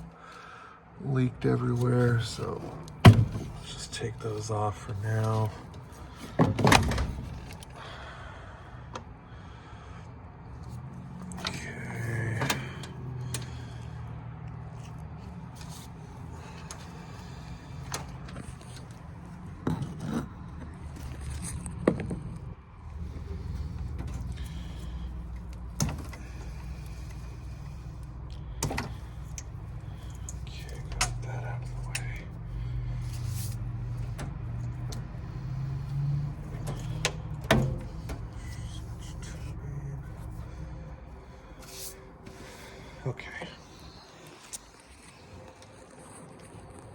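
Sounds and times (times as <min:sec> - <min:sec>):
steady low hum: 0:00.0 - 0:46.9
furnace parts clicking and knocking: 0:01.8 - 0:08.0, 0:14.4 - 0:39.3.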